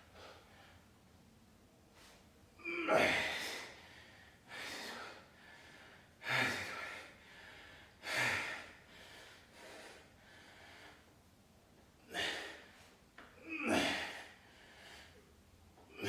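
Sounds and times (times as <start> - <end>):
person breathing hard: 3.0 - 11.1, 13.7 - 15.3.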